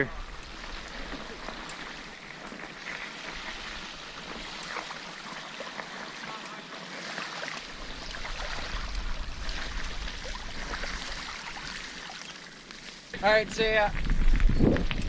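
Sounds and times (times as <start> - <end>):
water splashing and sloshing: 0.0 - 13.2.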